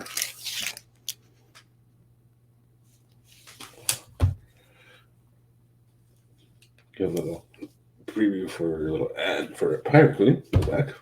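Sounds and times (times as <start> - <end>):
paper rustling: 0.0 - 1.2.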